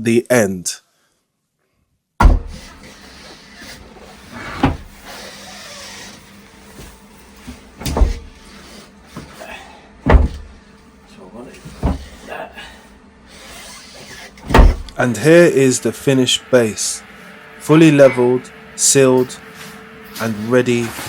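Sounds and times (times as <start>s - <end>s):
loud knocks: 2.2s - 2.7s, 4.5s - 5.1s, 7.8s - 8.4s, 10.1s - 10.6s, 11.8s - 12.2s, 14.4s - 15.0s.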